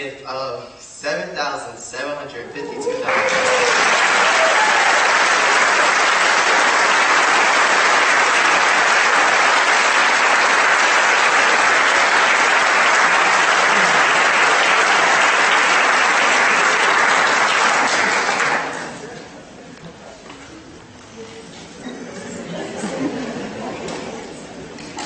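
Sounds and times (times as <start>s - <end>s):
audience applauding: 2.8s - 19.1s.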